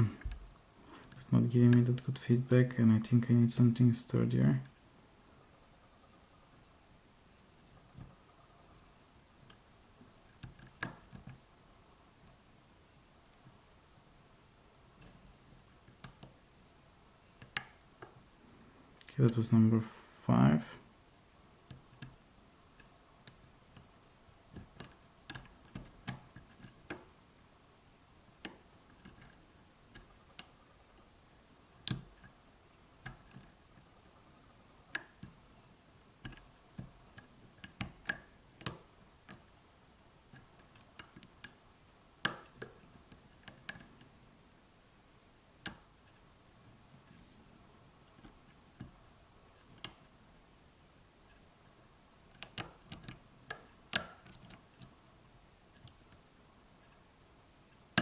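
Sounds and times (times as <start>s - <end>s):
pins snapping: 36.2s - 39.5s, 42.2s - 44.0s, 52.3s - 55.0s
lock pick clicking in padlock: 52.3s - 54.6s.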